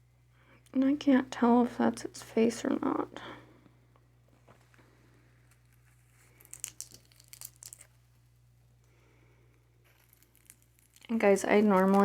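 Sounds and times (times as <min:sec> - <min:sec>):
eggshell crackling: 0:04.4 - 0:08.9, 0:09.7 - 0:12.0.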